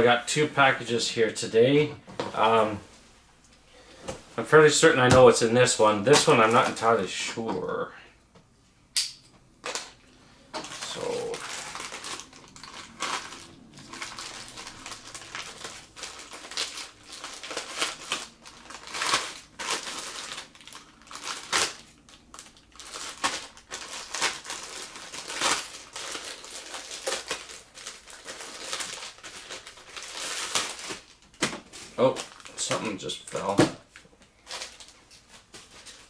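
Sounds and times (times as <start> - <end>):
packaging crinkling and rustling: 4.1 - 7.1, 9.6 - 36.0.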